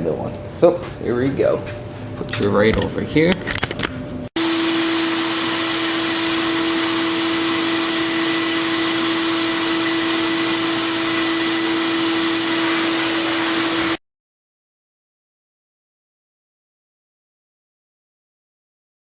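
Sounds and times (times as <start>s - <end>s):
cabinet machinery humming: 3.9s - 14.0s
blasting nozzle hissing: 4.4s - 14.0s.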